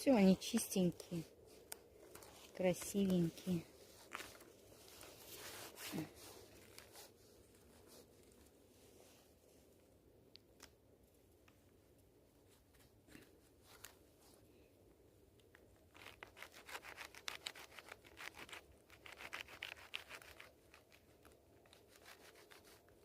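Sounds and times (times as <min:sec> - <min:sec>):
faint scrapes: 0:00.1 - 0:09.8.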